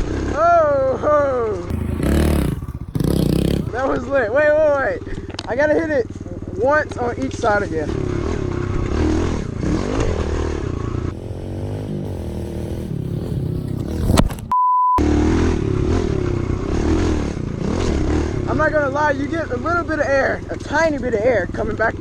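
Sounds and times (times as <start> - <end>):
dirt bike engine revving: 1.7 - 4.0, 8.0 - 18.6
censor bleep: 14.5 - 15.0.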